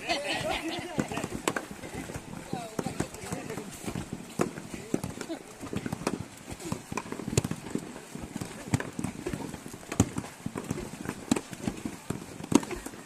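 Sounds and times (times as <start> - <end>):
hard objects knocking together: 0.4 - 7.8.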